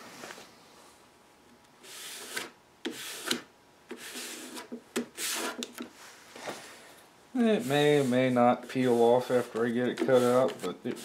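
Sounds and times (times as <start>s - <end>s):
hand rubbing paper on plywood: 7.4s - 11.0s.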